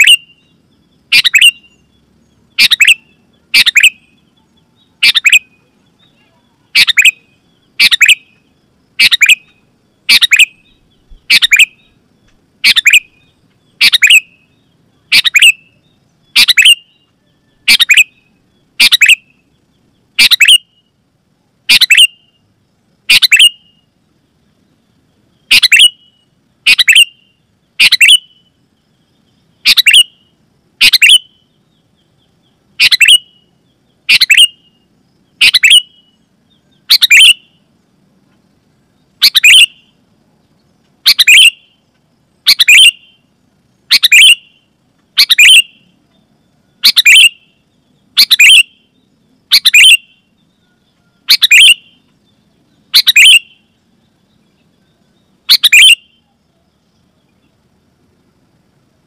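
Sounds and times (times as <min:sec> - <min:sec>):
bird giving short loud calls: 0:49.5 - 0:50.0, 0:52.9 - 0:53.4.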